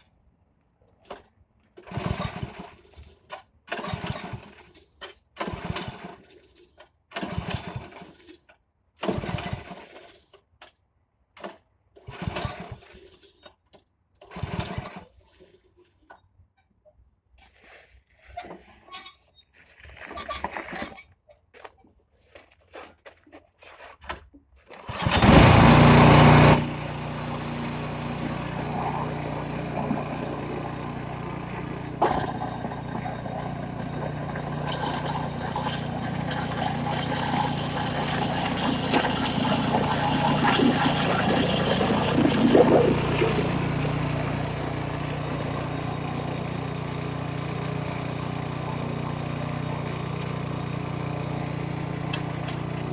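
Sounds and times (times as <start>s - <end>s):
snowblower engine running: 24.8s - 52.9s.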